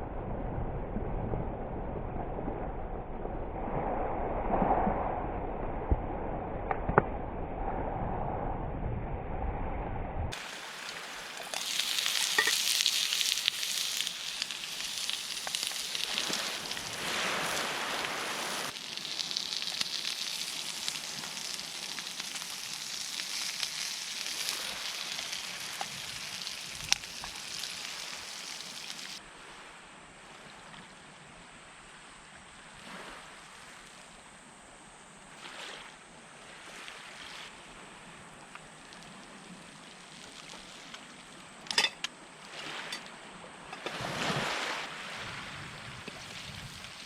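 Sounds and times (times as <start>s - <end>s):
fire crackles: 10.3s - 29.2s, 38.6s - 42.1s, 45.8s - 47.0s
food sizzling in a pan: 10.3s - 29.2s.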